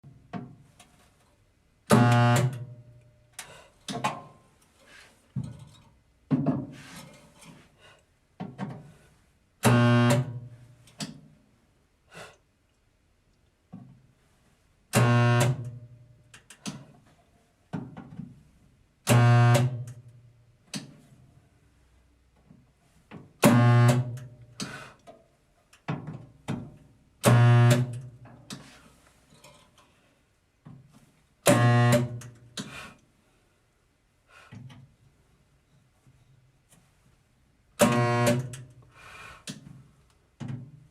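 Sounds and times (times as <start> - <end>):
spot welder buzzing: 9.7 - 10.4, 15.0 - 15.7, 31.5 - 32.2, 37.8 - 38.6.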